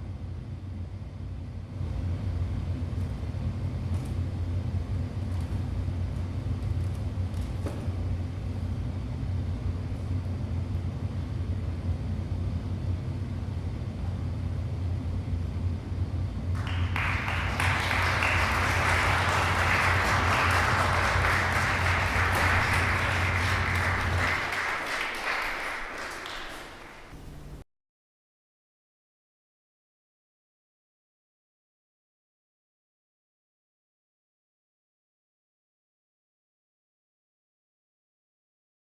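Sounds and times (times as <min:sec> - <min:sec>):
steady low hum: 0:00.0 - 0:27.6
audience applauding: 0:16.6 - 0:27.6.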